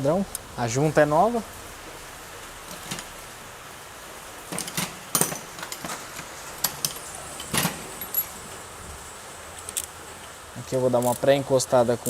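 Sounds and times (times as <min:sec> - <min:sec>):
tools clinking on metal: 0:04.5 - 0:08.4.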